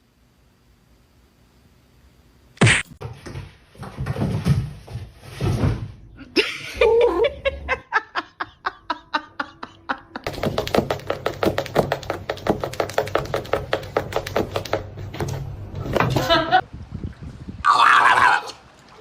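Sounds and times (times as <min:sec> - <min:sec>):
person laughing: 0:06.2 - 0:10.3, 0:16.1 - 0:16.6.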